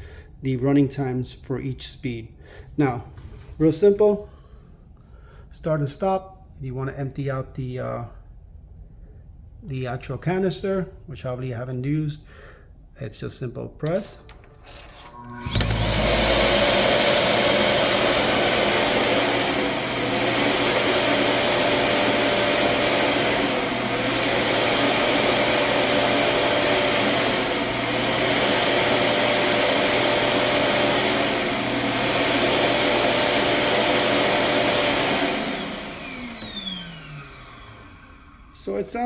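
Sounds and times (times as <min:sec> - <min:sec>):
vacuum suction motor pulsing: 0:14.6 - 0:38.7.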